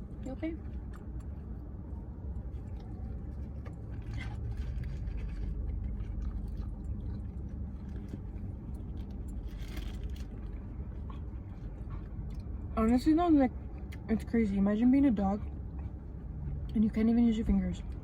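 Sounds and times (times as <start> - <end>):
soft chewing: 0.0 - 12.8, 15.1 - 17.0
food handling clicks and rustles: 2.7 - 10.7.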